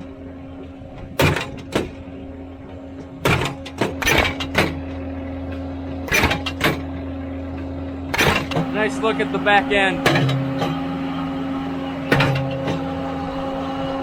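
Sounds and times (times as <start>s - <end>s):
machine engine running: 0.0s - 14.0s
post driver pounding fence post: 3.2s - 4.8s, 6.1s - 6.9s, 8.1s - 8.7s.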